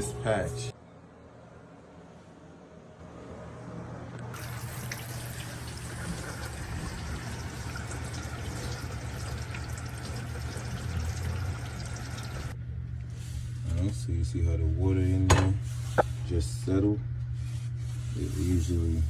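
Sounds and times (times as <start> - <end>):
water running: 4.3 - 12.6.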